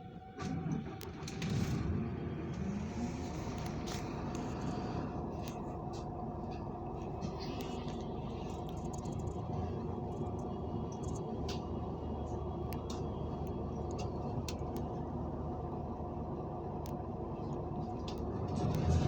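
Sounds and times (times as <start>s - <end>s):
electric train rumble and hum: 0.0s - 19.0s
faint clicks: 5.4s - 9.5s.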